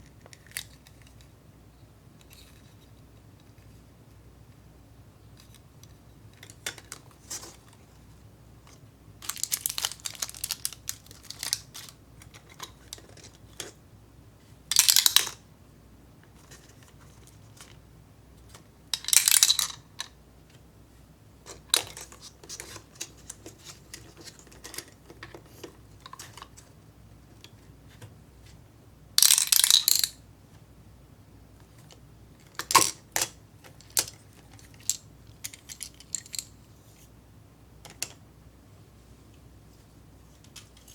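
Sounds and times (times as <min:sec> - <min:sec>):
plastic parts clicking and tapping: 0:05.4 - 0:07.8, 0:08.7 - 0:13.8, 0:14.7 - 0:15.4, 0:18.5 - 0:20.2, 0:21.5 - 0:26.7, 0:29.2 - 0:30.1, 0:31.6 - 0:36.5, 0:37.8 - 0:38.2.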